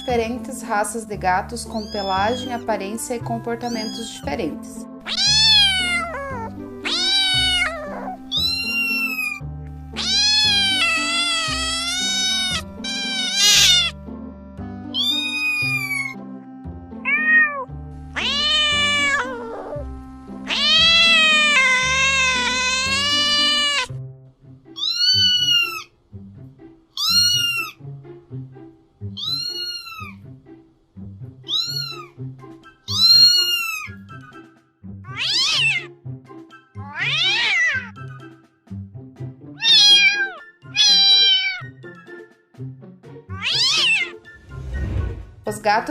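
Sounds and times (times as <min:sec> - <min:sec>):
background music: 0:00.0 - 0:45.9
cat meowing: 0:01.7 - 0:02.7, 0:03.7 - 0:04.2, 0:05.0 - 0:14.0, 0:14.9 - 0:16.2, 0:17.0 - 0:19.8, 0:20.4 - 0:23.9, 0:24.7 - 0:25.9, 0:27.0 - 0:27.8, 0:29.1 - 0:30.2, 0:31.5 - 0:32.2, 0:32.9 - 0:34.1, 0:35.1 - 0:35.9, 0:36.8 - 0:38.0, 0:39.6 - 0:41.8, 0:43.3 - 0:44.2.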